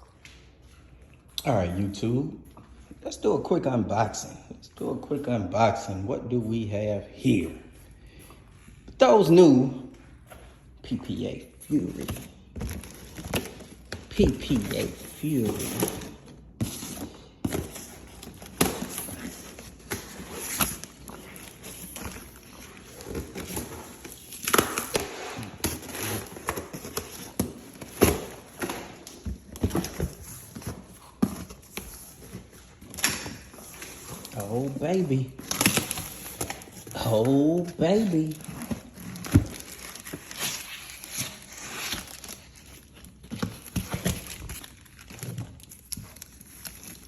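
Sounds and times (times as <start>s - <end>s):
packaging rustling: 11.7s - 47.0s.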